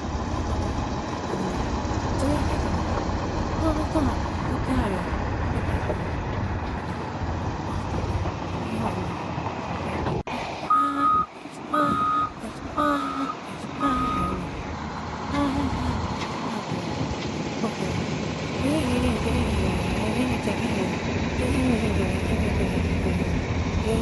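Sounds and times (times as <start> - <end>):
diesel engine running: 0.0 - 24.0
reversing alarm beeping: 10.7 - 14.6.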